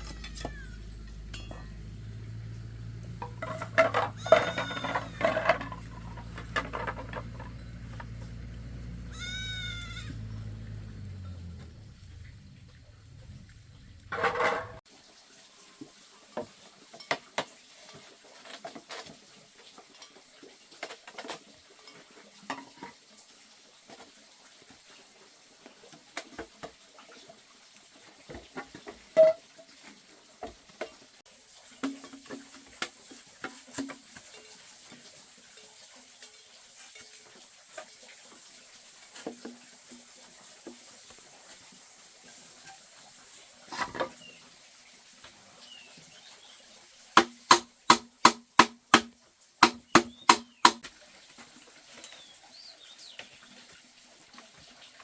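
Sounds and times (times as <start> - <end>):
clatter: 3.2 - 8.5, 14.1 - 14.8.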